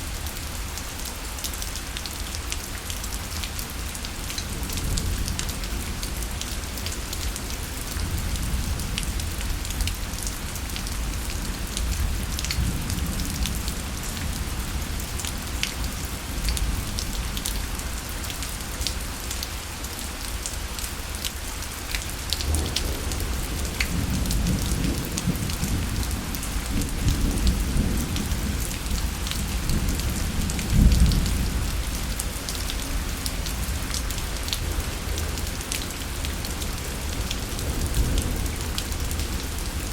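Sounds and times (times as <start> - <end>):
steady rain falling: 0.0 - 39.9
rolling thunder rumbling: 22.4 - 32.7.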